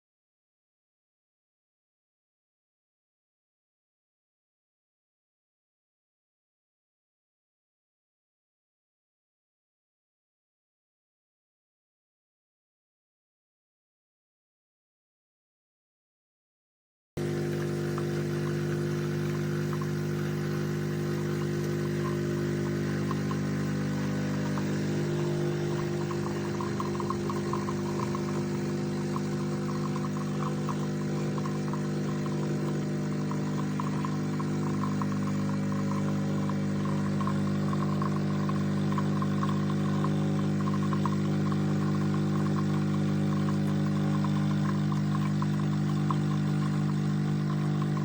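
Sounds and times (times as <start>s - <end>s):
espresso machine pump buzzing: 17.2s - 48.0s.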